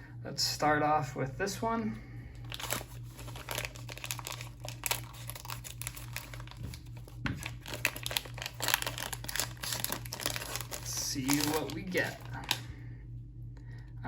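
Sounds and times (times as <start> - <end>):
steady low hum: 0.0 - 14.0
foil wrapper crinkling and tearing: 2.4 - 12.7.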